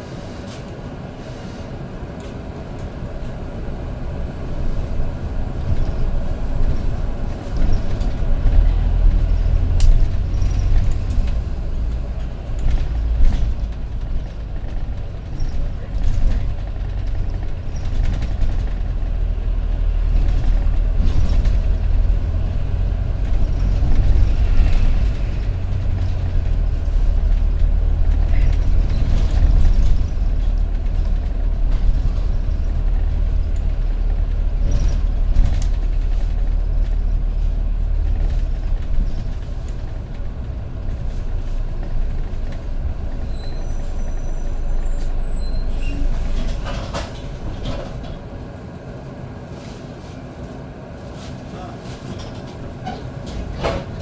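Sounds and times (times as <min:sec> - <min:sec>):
bus engine and road rumble: 0:00.0 - 0:54.0.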